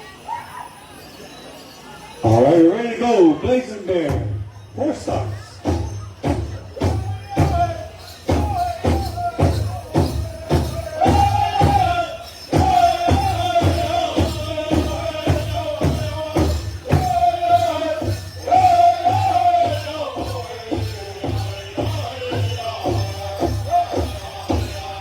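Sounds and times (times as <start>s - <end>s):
large drum beating: 5.1s - 25.0s
men singing in high voices: 6.8s - 25.0s.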